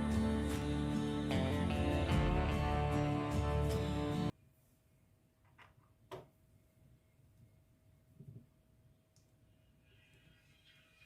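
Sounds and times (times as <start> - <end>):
guitar music: 0.0 - 4.3.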